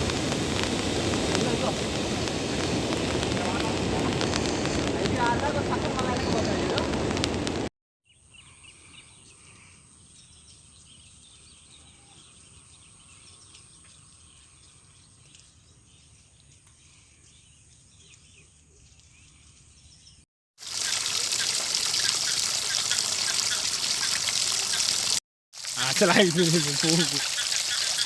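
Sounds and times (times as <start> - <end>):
rushing floodwater: 0.0 - 7.2, 20.7 - 28.0
insect chirps: 20.6 - 28.0.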